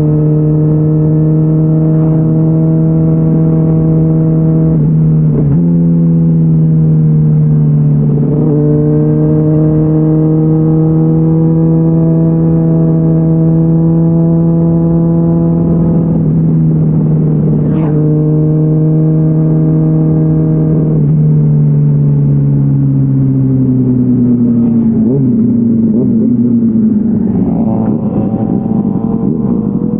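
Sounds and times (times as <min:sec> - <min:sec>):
motorcycle engine running: 0:23.3 - 0:29.9.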